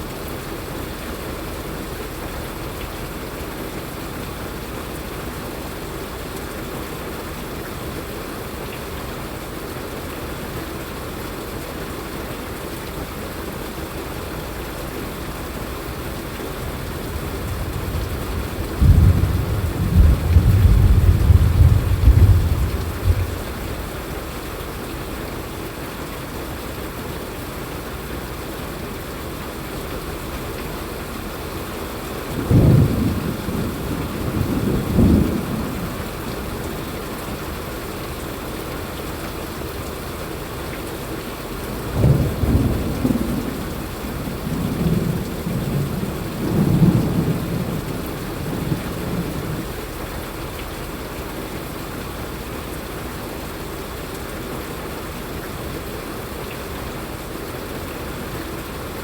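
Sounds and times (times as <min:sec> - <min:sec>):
steady rain: 0:00.0 - 0:59.0
thunder rumbling: 0:16.6 - 0:24.1, 0:32.2 - 0:37.0, 0:41.8 - 0:49.9.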